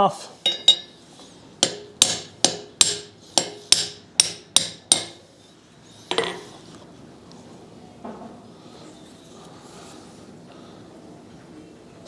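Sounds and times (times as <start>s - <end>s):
hammer striking steel: 0.5s - 1.0s, 1.6s - 5.3s.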